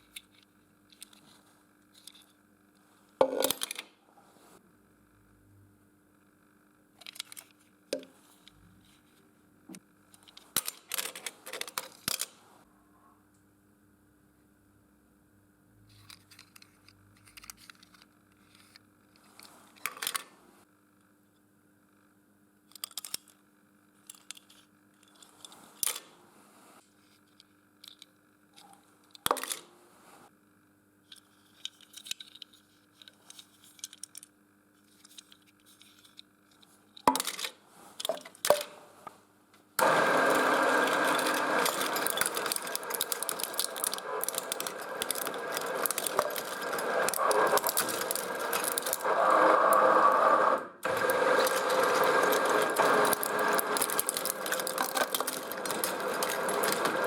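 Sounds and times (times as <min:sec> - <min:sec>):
faint steady hum: 0:00.0 - 0:57.0
shredder grinding metal: 0:39.8 - 0:57.0
clicks and knocks: 0:50.8 - 0:57.0.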